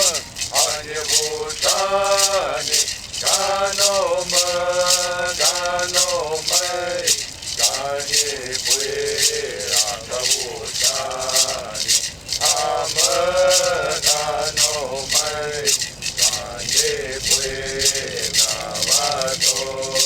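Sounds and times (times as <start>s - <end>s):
hand rattle shaken: 0.0s - 20.0s
person singing a slow chant: 0.0s - 20.0s.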